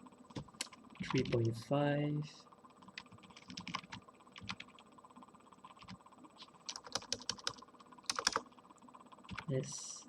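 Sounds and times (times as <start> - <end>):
computer keyboard keystrokes: 0.3 - 1.5, 2.8 - 4.8, 5.7 - 8.5, 9.3 - 9.5.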